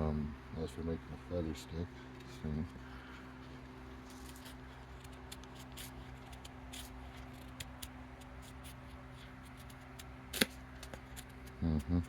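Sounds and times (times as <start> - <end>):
knife scraping wood: 4.0 - 11.5.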